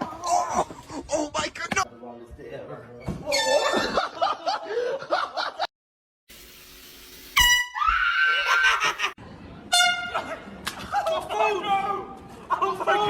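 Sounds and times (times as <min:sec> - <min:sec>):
air horn blast: 0:07.4 - 0:07.8.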